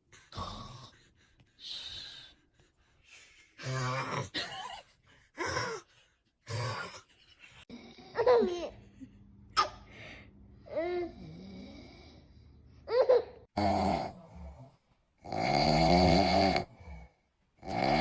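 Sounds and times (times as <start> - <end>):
man snoring: 11.1 - 12.4, 13.6 - 18.0.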